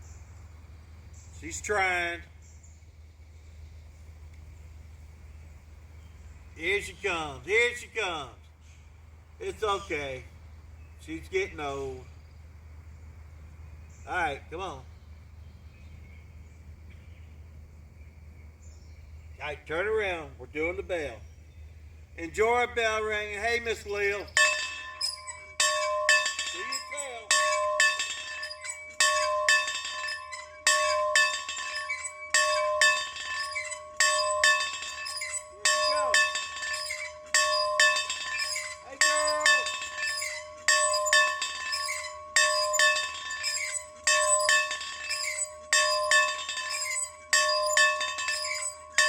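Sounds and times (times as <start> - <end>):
bell ringing: 24.0 - 49.0.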